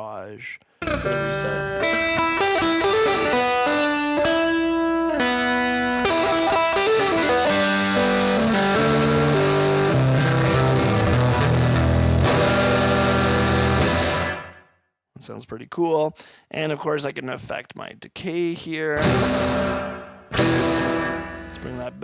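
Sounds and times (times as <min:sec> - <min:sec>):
distorted electric guitar: 0:00.8 - 0:14.6, 0:19.0 - 0:22.0.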